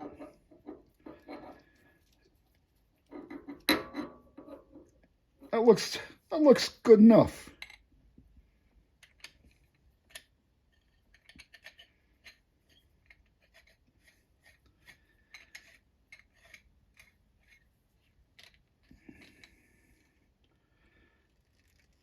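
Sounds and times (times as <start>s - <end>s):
plastic connector clicks and scrapes: 13.0s - 17.6s.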